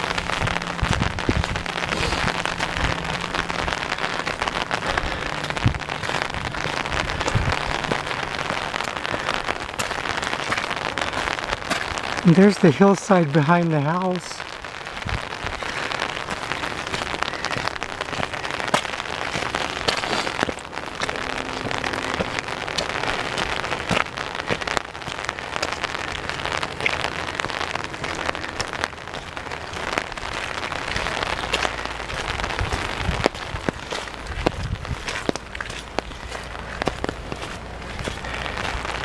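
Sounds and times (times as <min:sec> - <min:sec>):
low rumble: 0:00.0 - 0:12.2, 0:14.4 - 0:39.0
raindrops ticking on microphone: 0:00.0 - 0:39.0
steady rain hiss: 0:00.0 - 0:39.0.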